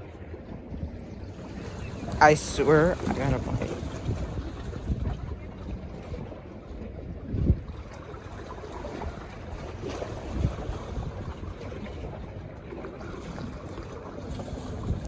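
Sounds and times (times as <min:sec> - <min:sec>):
sea surf: 0:00.0 - 0:15.0
wind buffeting microphone: 0:00.0 - 0:15.0.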